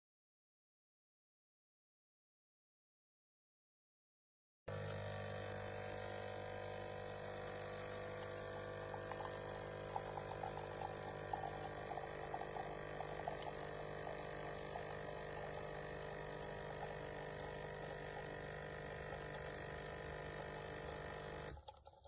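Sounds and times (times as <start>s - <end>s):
coffee trickling into cup: 4.7s - 21.9s
coffee machine pump humming: 4.7s - 22.0s.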